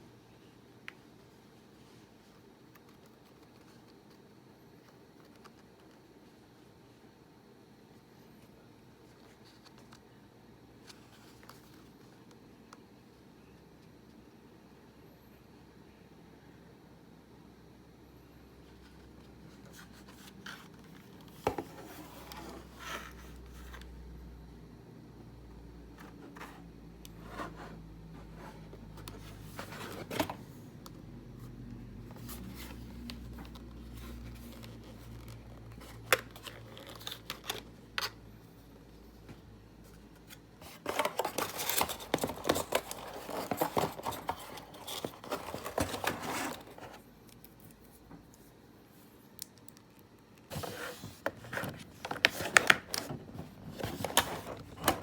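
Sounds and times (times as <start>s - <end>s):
packaging crinkling and tearing: 34.0s - 38.2s, 40.6s - 47.9s.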